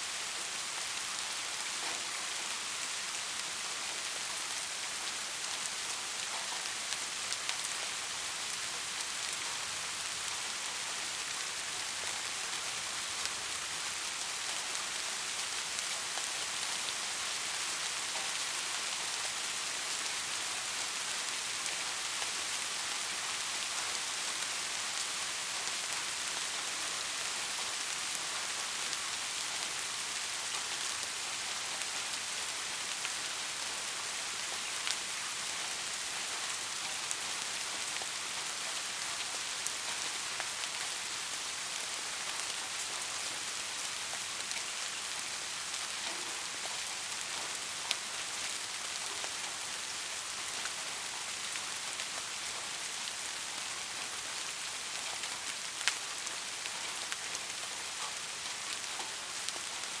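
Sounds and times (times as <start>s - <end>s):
steady rain falling: 0.0s - 60.0s
raindrops striking close by: 0.1s - 60.0s.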